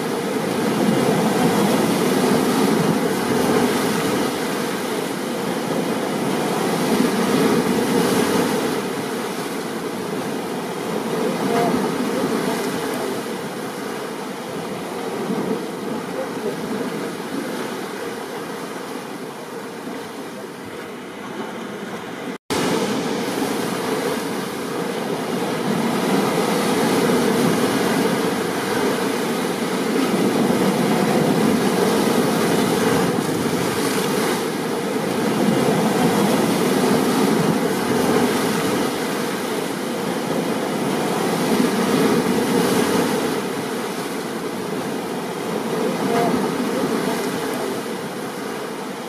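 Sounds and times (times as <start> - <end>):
ocean surf: 0.0 - 49.0
heavy rain: 22.5 - 49.0.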